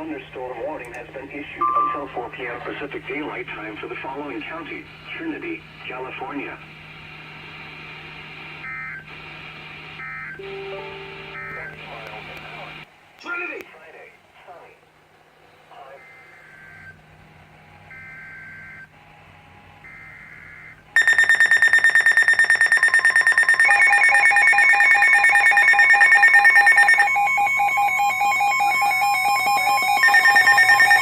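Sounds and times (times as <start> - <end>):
electronic alarm beeping: 1.6 - 2.8, 10.4 - 11.9, 19.9 - 31.0
steady and pulsing tones: 10.4 - 12.8
warbling data bursts: 21.0 - 31.0.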